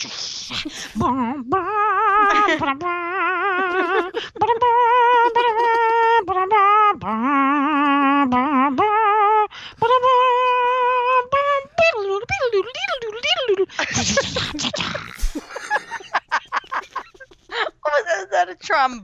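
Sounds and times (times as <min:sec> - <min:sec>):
woman singing wordless melody: 0:00.7 - 0:13.9.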